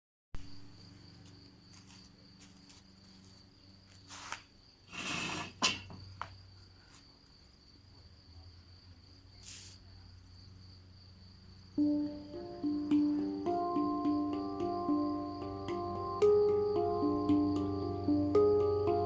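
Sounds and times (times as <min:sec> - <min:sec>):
crickets trilling: 0:00.4 - 0:19.0
steel tongue drum note: 0:11.8 - 0:19.0.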